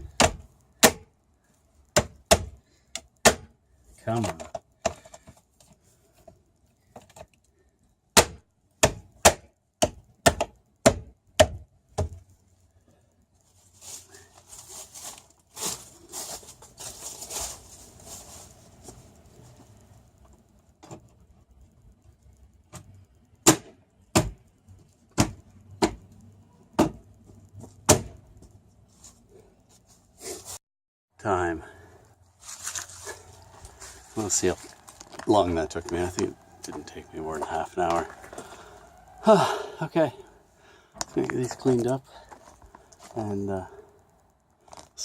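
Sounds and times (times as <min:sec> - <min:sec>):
scraping and rustling: 0:13.4 - 0:20.4, 0:32.3 - 0:39.0.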